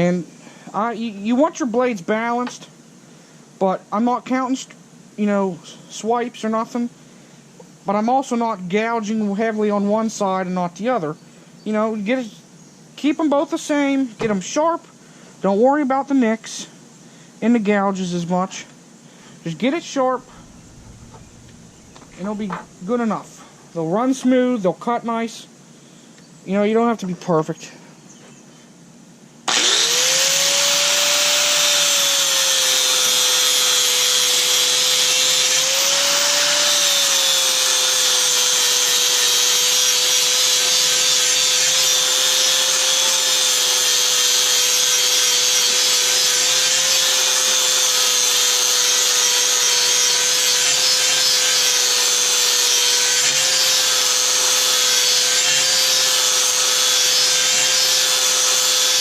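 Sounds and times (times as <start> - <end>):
angle grinder grinding metal: 20.0 - 23.0, 29.5 - 59.0.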